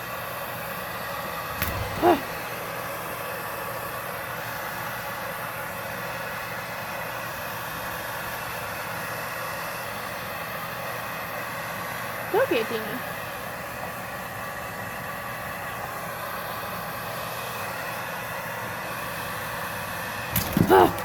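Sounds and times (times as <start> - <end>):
brief wavering cry: 1.7 - 2.4, 20.4 - 21.0.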